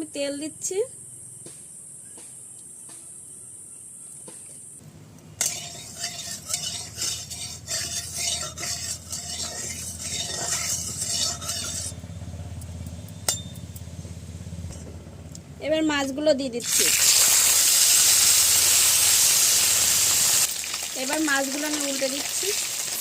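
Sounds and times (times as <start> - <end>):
oil sizzling in frying pan: 16.6 - 23.0.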